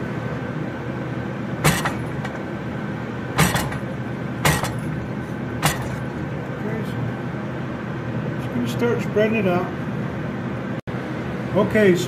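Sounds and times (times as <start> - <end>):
hammer blows on hot steel: 1.6 - 2.6, 3.4 - 6.2.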